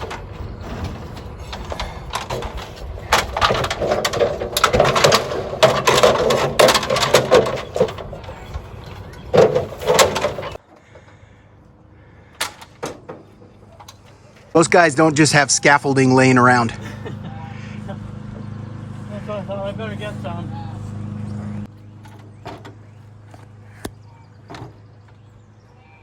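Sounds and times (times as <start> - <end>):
ladder clattering: 0.0 - 11.2, 12.4 - 17.2.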